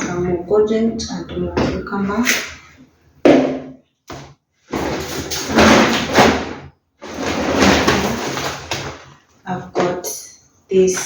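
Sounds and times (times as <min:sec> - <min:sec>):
plastic bags rustling: 0:04.7 - 0:09.4.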